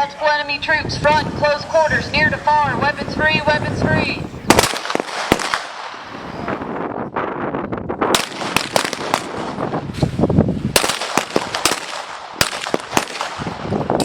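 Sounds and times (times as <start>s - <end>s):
pistol shots: 4.5s - 6.1s, 8.1s - 9.7s, 10.7s - 14.0s.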